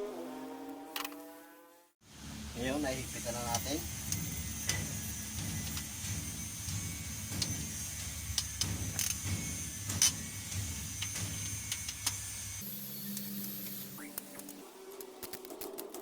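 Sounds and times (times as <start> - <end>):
steady low hum: 2.1 - 14.9
hand tools clicking on metal: 3.1 - 12.6.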